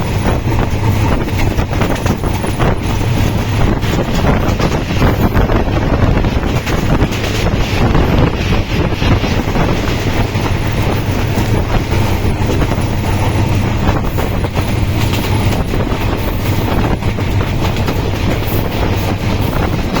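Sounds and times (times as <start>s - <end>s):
vehicle rumbling and rattling: 0.0s - 20.0s.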